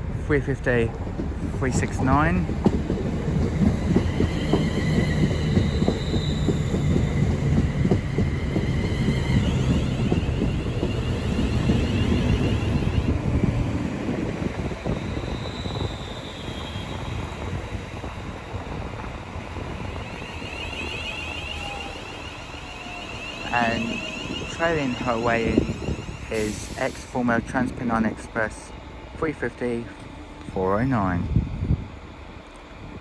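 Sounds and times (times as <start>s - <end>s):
train wheels rumbling on rail: 0.0s - 33.0s.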